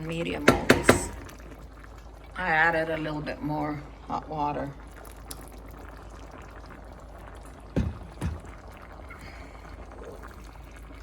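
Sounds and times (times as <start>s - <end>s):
water pouring into a pot: 0.0s - 11.0s
loud knocks: 0.4s - 1.3s, 7.8s - 8.6s.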